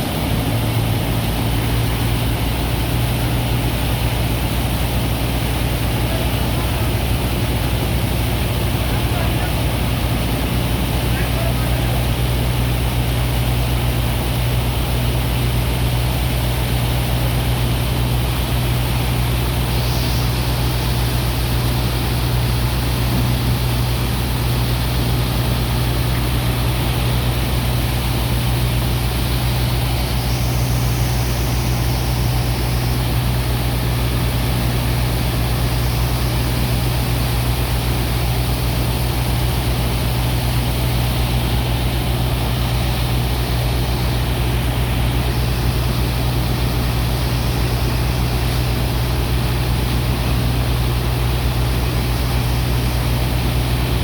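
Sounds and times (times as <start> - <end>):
pump machinery low drone: 0.0 - 54.0.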